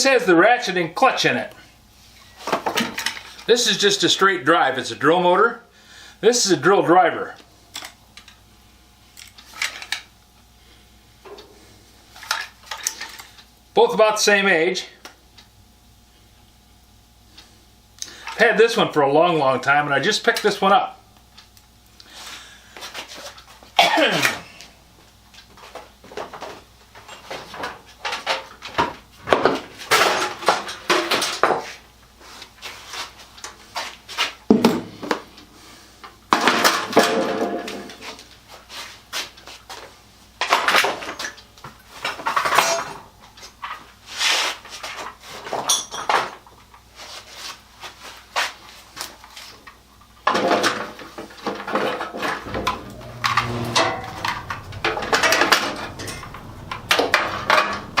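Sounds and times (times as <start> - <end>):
tools clacking on a workbench: 40.4 - 43.8.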